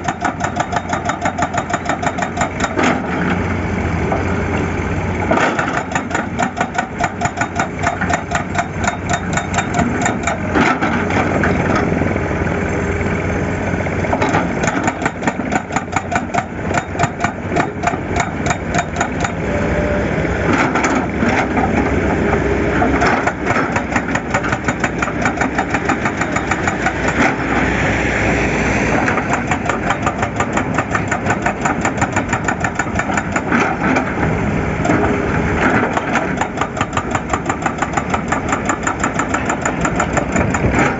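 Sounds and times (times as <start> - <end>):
diesel engine pulsing: 2.4 - 40.9.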